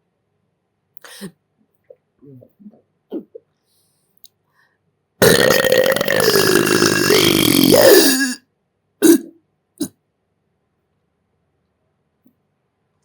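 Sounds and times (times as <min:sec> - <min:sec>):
person burping loudly: 0:05.2 - 0:08.4, 0:09.0 - 0:09.9.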